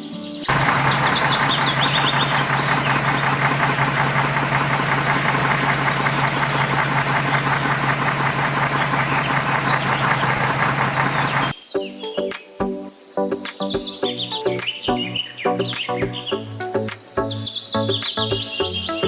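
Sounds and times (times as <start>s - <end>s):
machine running with clatter: 0.5s - 11.5s.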